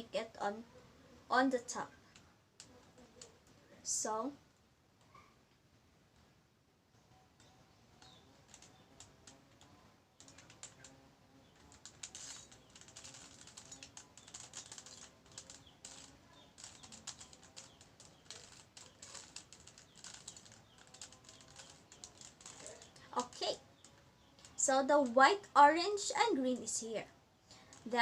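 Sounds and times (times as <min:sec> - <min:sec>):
puzzle cube clicking: 0:11.6 - 0:24.6.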